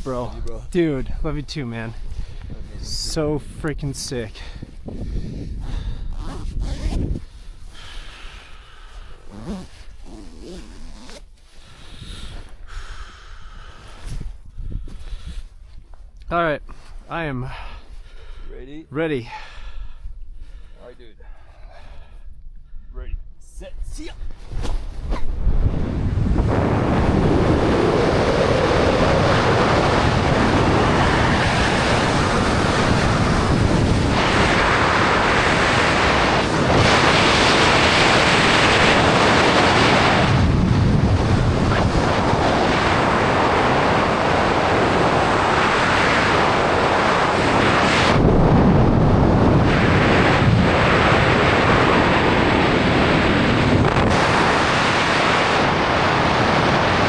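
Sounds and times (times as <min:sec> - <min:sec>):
wind buffeting microphone: 0:00.0 - 0:08.5, 0:11.8 - 0:16.2, 0:21.9 - 0:57.0.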